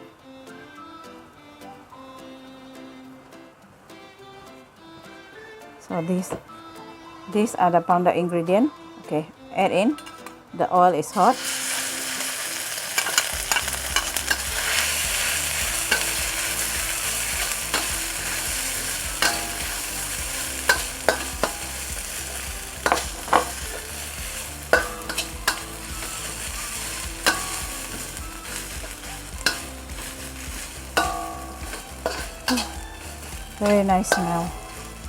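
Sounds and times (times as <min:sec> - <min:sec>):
spice paste sizzling in oil: 0:11.1 - 0:35.0
utensil scraping and knocking pan: 0:13.0 - 0:35.0.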